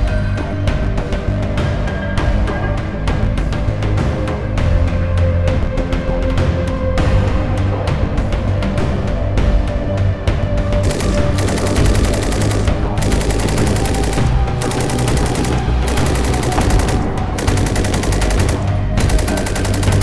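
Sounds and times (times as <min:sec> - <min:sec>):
background music: 0:00.0 - 0:20.0
machine gun automatic bursts: 0:10.8 - 0:20.0.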